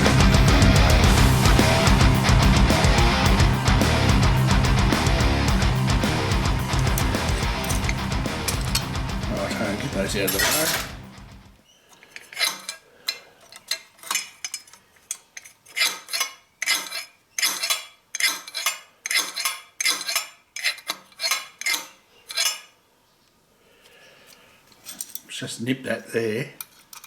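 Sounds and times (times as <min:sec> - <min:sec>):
metal parts clinking: 0:06.8 - 0:11.0, 0:12.0 - 0:22.7, 0:24.8 - 0:25.3, 0:26.6 - 0:27.0.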